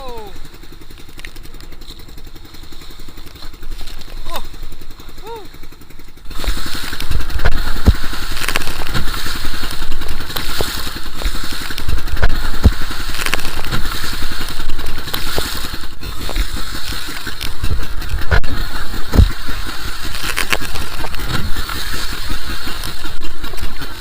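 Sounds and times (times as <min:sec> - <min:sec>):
boat engine running: 0:00.0 - 0:24.0
low thumps: 0:06.1 - 0:24.0.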